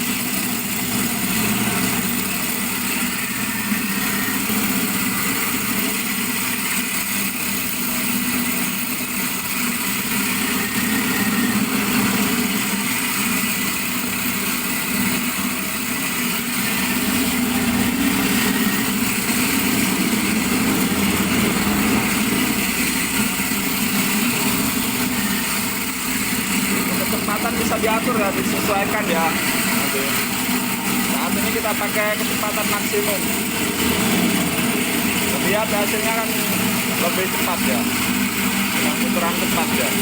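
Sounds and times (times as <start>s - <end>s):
grinding machine humming: 0.0s - 40.0s
machine hiss: 0.0s - 40.0s.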